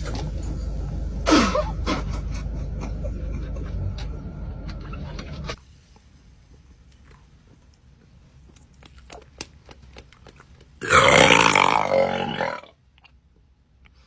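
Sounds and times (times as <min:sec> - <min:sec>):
long loud burp: 0:10.8 - 0:12.7.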